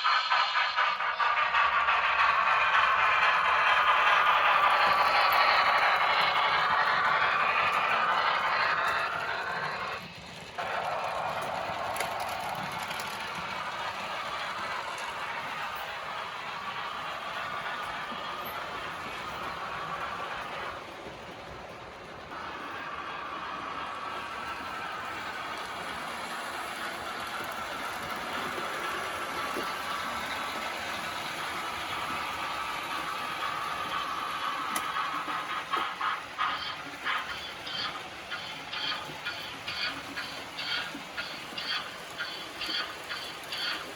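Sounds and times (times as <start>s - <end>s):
model train rattling and humming: 0.0s - 43.9s.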